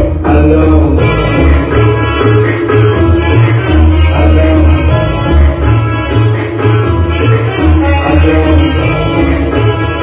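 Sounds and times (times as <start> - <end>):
loud music with heavy bass: 0.0 - 10.0.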